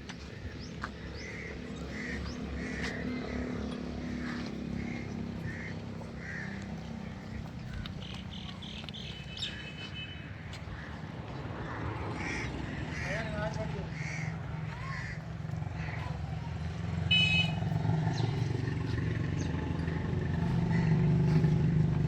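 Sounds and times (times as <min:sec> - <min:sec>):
birds chirping: 0:00.0 - 0:22.0.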